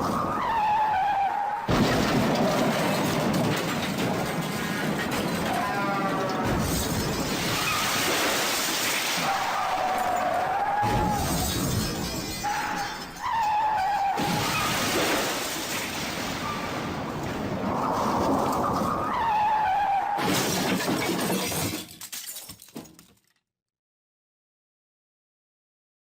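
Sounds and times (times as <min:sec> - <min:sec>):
tyres squealing: 0:00.1 - 0:08.0
crash of breaking glass and metal: 0:01.7 - 0:17.3, 0:20.2 - 0:23.3
clattering debris: 0:01.7 - 0:18.7, 0:20.2 - 0:23.4.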